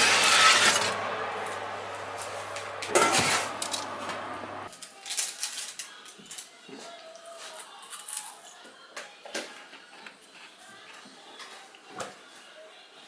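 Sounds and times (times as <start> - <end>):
dishes clattering and scraping: 2.8 - 4.0.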